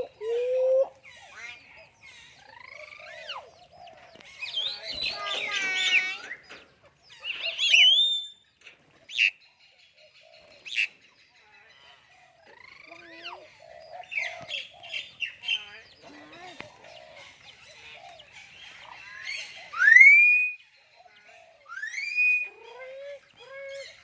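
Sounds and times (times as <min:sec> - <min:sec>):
myna birds calling: 0:00.0 - 0:24.0.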